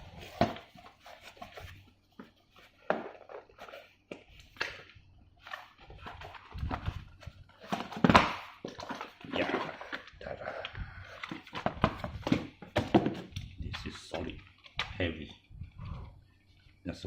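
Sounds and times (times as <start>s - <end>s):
plastic parts clunking and knocking: 5.5s - 10.2s, 11.0s - 15.3s.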